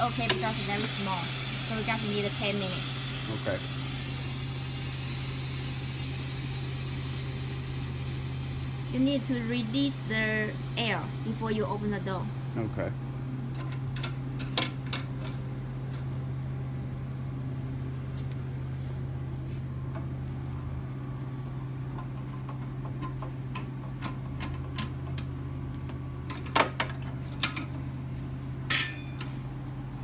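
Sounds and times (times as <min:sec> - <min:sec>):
machine electric hum: 0:00.0 - 0:30.0.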